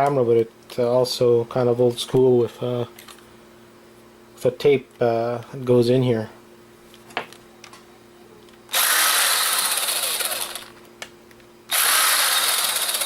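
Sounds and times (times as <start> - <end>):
power screwdriver running: 8.7 - 10.7, 11.7 - 13.0.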